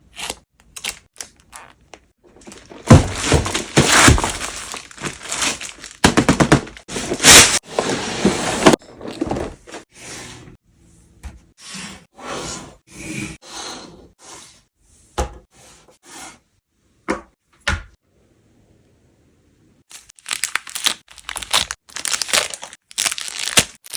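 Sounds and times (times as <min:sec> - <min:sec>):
packaging rustling: 0:02.3 - 0:09.8, 0:20.2 - 0:23.9
packaging knocks: 0:02.4 - 0:09.5
packaging scraping and rubbing: 0:02.4 - 0:09.9, 0:20.2 - 0:23.9.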